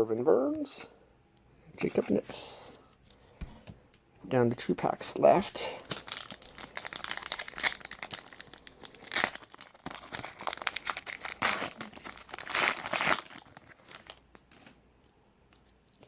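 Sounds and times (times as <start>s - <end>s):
plastic wrapper crinkling: 5.7s - 14.8s
wrapper tearing: 5.8s - 14.8s.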